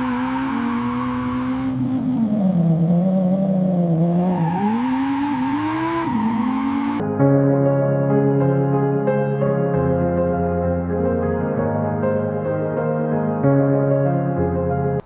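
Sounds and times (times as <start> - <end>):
car engine revving: 0.0 - 7.0.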